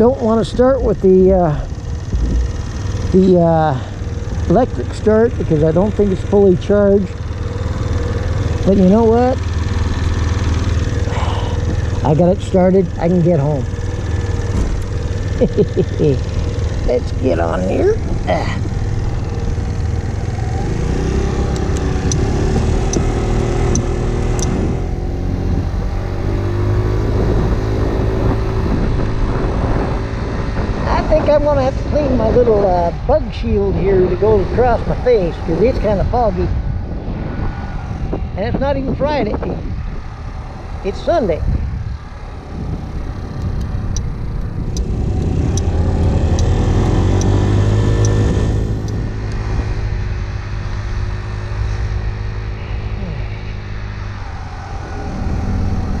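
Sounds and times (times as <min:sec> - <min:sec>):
scooter engine running: 0:00.0 - 0:36.4, 0:39.5 - 0:56.0
sharp clicks: 0:23.7 - 0:24.6, 0:43.4 - 0:47.4.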